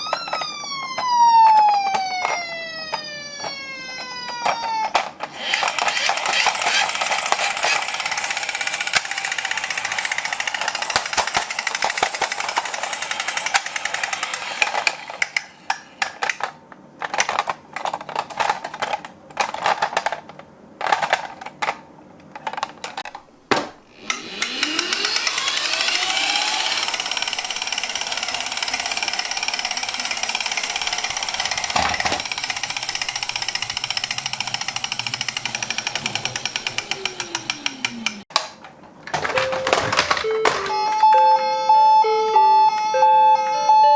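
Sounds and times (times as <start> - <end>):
toy cars buzzing mechanical rattle: 3.2 - 19.0, 24.0 - 38.3.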